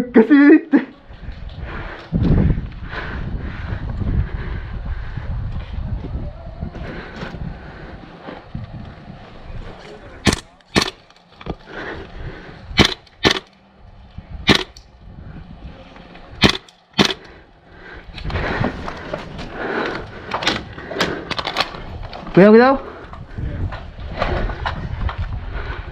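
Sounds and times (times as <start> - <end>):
airsoft gun shots: 10.3 - 11.0, 12.8 - 13.5, 14.5 - 14.8, 16.4 - 17.3.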